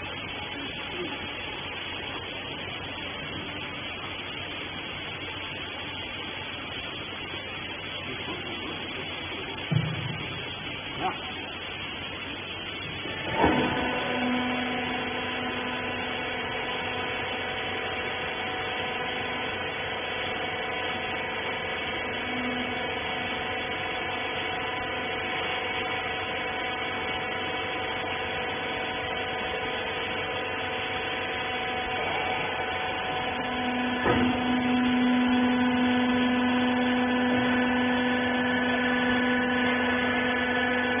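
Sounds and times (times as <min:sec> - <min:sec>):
machine motor humming: 0:00.0 - 0:41.0.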